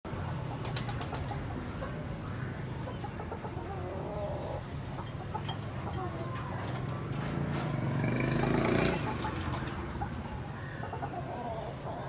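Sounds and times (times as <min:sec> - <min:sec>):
clucking bird calls: 0:00.3 - 0:07.0, 0:08.2 - 0:12.0.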